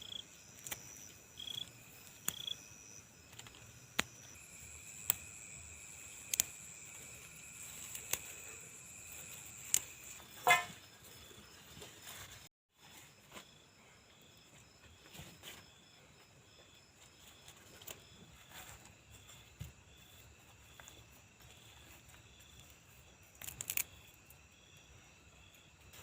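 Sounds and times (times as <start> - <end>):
crickets chirping: 0.0 - 26.0.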